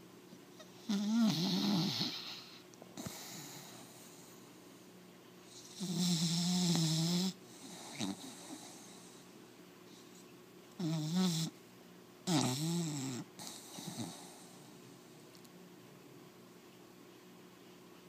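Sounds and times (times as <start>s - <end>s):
puppy snoring: 0.6s - 4.4s, 5.5s - 9.3s, 10.8s - 11.6s, 12.2s - 15.2s
puppy breathing softly: 2.0s - 4.8s, 7.3s - 10.3s.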